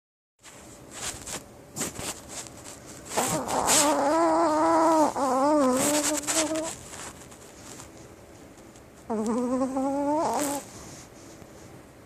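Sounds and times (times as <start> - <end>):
dog snuffling: 0.4 - 11.4
dog snoring: 3.1 - 6.8, 9.1 - 11.0.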